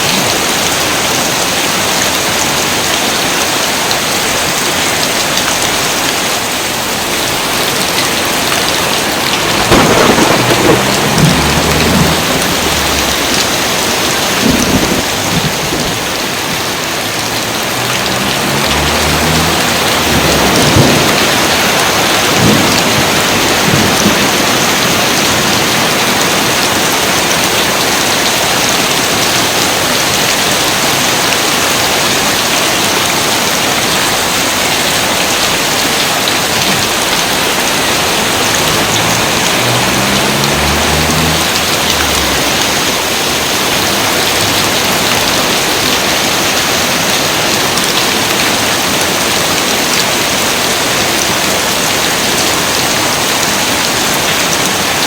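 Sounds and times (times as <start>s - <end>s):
steady heavy rain: 0.0s - 55.0s
thunder rumbling low: 7.4s - 16.6s, 17.2s - 24.6s, 38.1s - 45.9s.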